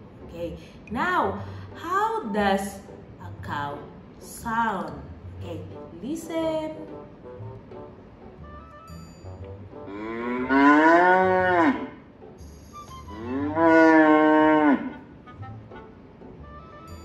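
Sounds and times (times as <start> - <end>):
cow mooing: 9.9 - 12.0, 13.1 - 15.1.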